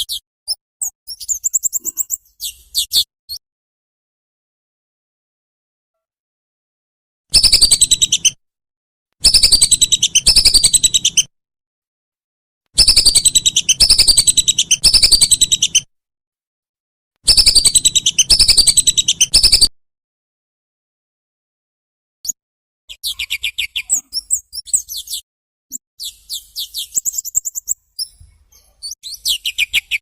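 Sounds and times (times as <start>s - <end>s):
bird trills: 0.8s - 3.1s, 7.3s - 8.4s, 9.2s - 11.3s, 12.8s - 15.9s, 17.3s - 19.7s.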